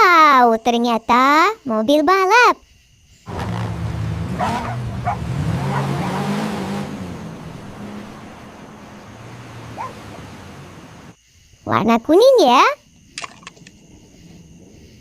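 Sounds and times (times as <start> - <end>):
racing car engine: 3.3 - 11.2.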